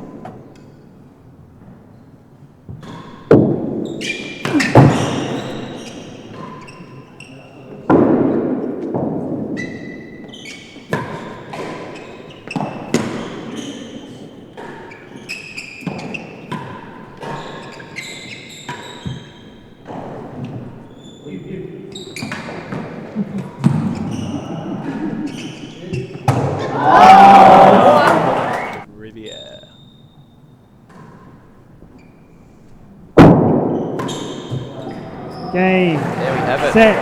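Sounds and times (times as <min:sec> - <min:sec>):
shoe squeaks: 0:02.8 - 0:07.7, 0:09.6 - 0:16.6, 0:17.2 - 0:22.8, 0:23.6 - 0:26.3, 0:28.6 - 0:31.2, 0:31.8 - 0:32.7, 0:33.8 - 0:37.0.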